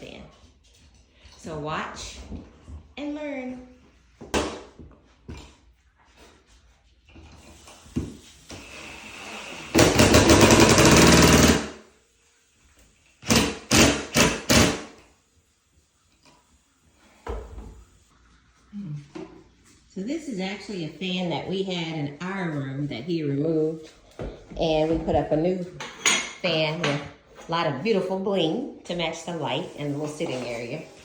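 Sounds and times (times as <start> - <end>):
loud power tool bursts: 8.6 - 11.8, 13.2 - 14.9
power tool rattling whir: 9.2 - 11.8, 13.2 - 14.9.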